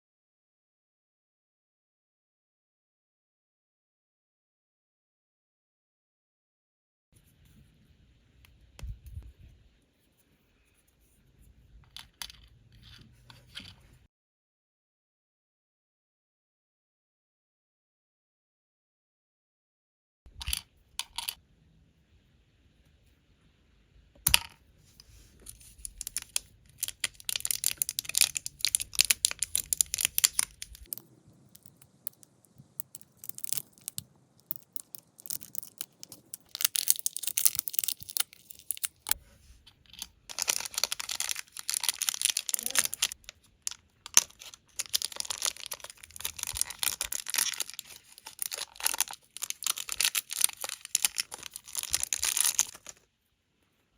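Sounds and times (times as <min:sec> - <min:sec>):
plastic packaging crinkling: 0:25.5 - 0:39.2, 0:40.3 - 0:53.0.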